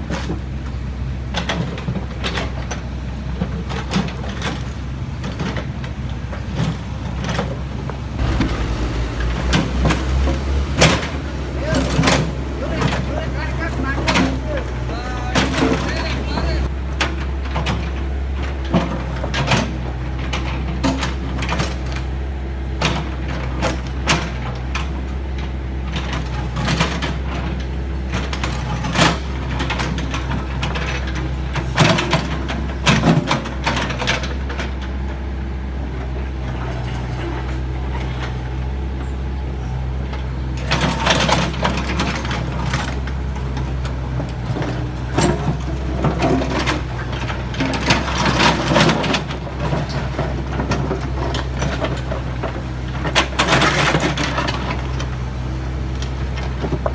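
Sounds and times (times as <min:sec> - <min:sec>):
heavy vehicle engine humming: 0:00.0 - 0:56.9
sharp knocks and clanks: 0:08.2 - 0:18.0.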